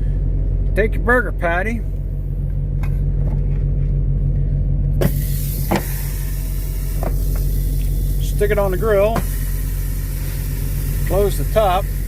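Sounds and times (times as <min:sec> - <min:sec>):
truck engine idling: 0:00.0 - 0:12.0
hiss: 0:05.0 - 0:12.0.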